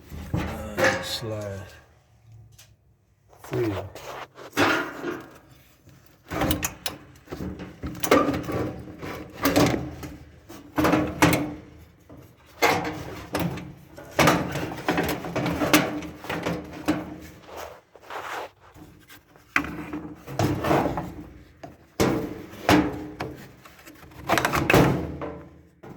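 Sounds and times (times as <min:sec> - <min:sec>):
rough scraping and knocks: 0:03.3 - 0:06.4, 0:14.0 - 0:24.7.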